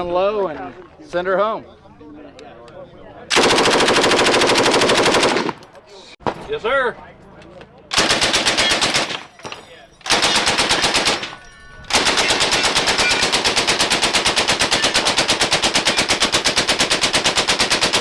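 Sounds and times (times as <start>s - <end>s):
machine gun firing bursts: 3.3s - 5.6s, 7.9s - 9.3s, 10.1s - 11.3s, 11.9s - 18.0s.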